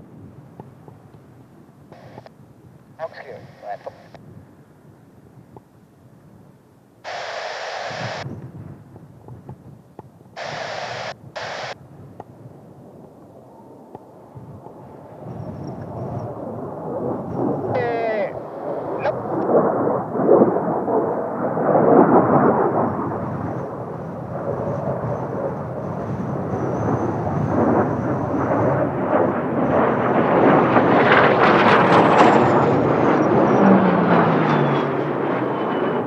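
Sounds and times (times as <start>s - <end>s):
high turbine whine: 1.9s - 2.3s, 7.1s - 8.2s, 10.4s - 11.8s, 13.5s - 19.5s
jet roar: 1.9s - 2.3s, 3.0s - 4.2s, 7.1s - 8.2s, 10.4s - 11.8s, 12.8s - 36.0s
wind buffeting microphone: 7.9s - 33.7s.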